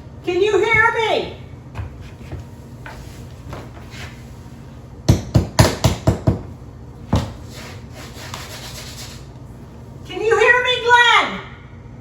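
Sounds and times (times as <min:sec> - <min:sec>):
knocking on a wall: 0:05.1 - 0:06.5.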